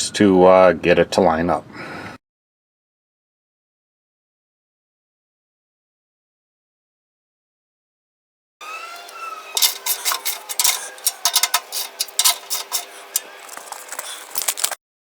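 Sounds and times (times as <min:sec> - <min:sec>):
metal tools clicking: 0:08.7 - 0:14.8.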